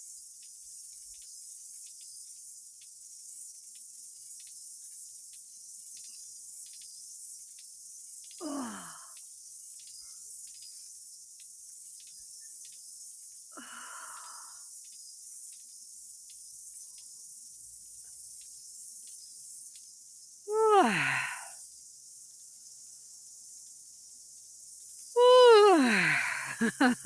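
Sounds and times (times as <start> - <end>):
woman yawning: 8.4 - 9.1, 13.6 - 14.5, 20.5 - 21.5, 25.2 - 27.0.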